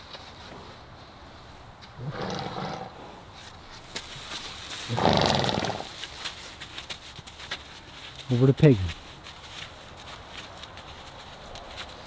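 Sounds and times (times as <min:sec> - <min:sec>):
horse calling: 0:02.0 - 0:03.0, 0:04.9 - 0:06.0.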